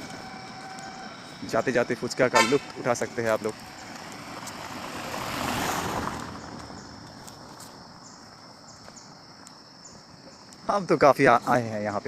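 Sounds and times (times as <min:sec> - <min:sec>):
high-pitched insect drone: 0:00.0 - 0:04.6
vehicle passing by: 0:00.0 - 0:08.1.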